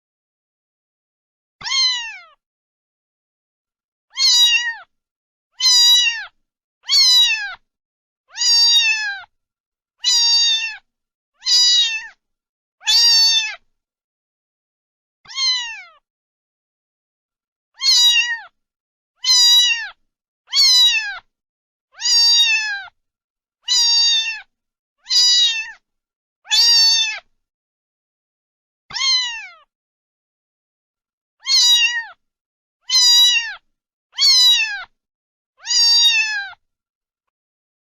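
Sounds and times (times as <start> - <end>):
cat meowing: 1.6 - 2.4, 4.1 - 4.9, 5.6 - 7.6, 8.3 - 9.3, 10.0 - 12.2, 12.8 - 13.6, 15.3 - 16.0, 17.8 - 18.6, 19.2 - 21.3, 22.0 - 23.0, 23.6 - 25.8, 26.5 - 27.3, 28.9 - 29.7, 31.4 - 32.2, 32.8 - 35.0, 35.6 - 36.6.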